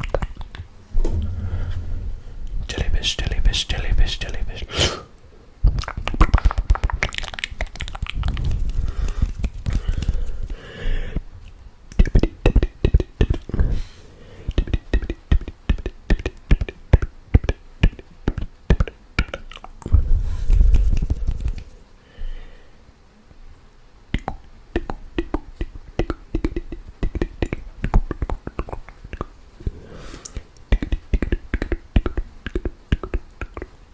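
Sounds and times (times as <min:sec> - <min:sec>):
tongue and lip clicks: 0:00.0 - 0:00.7, 0:05.7 - 0:10.6, 0:11.4 - 0:13.7, 0:14.5 - 0:21.7, 0:24.1 - 0:33.9
breathy hissing mouth noise: 0:02.7 - 0:05.2, 0:08.2 - 0:11.2, 0:28.2 - 0:31.7.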